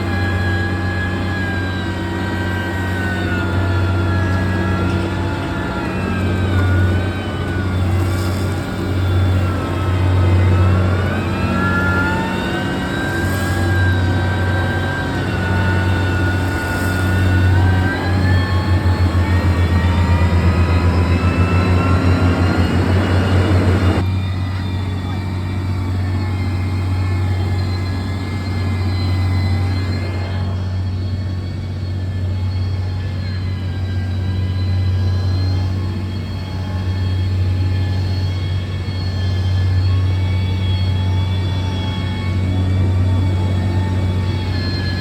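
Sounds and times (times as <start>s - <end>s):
fast even throbbing: 0.0s - 28.8s
diesel engine running: 0.0s - 45.0s
whine rising and falling: 0.0s - 45.0s.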